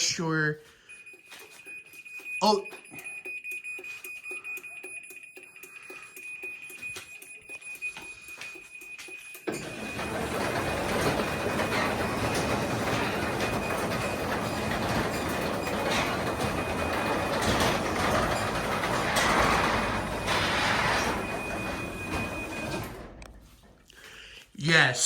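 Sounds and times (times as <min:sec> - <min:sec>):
garage door opener running: 0:09.4 - 0:23.8.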